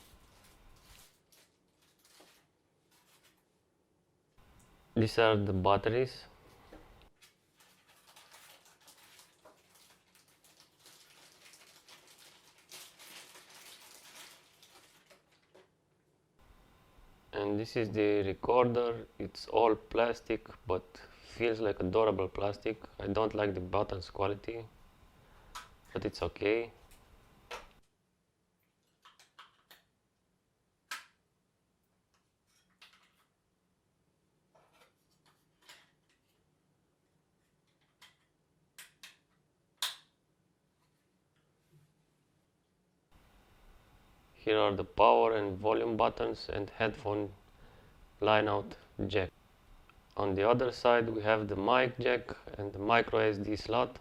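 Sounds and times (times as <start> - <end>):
packaging crinkling: 0.0 - 3.4, 7.2 - 15.7.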